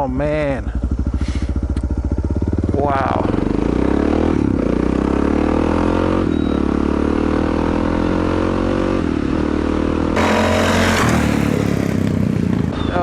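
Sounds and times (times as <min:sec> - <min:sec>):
motorcycle engine accelerating: 0:09.9 - 0:13.0.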